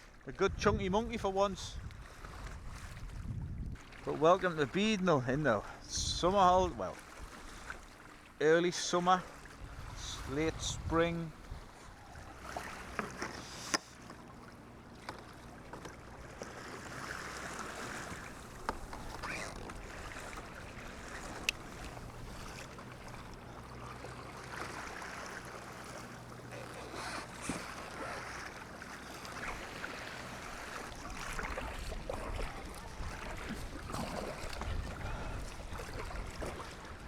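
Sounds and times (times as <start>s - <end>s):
water splashing against kayak hull: 0.0s - 37.0s
wind noise: 0.5s - 3.8s, 9.6s - 12.3s.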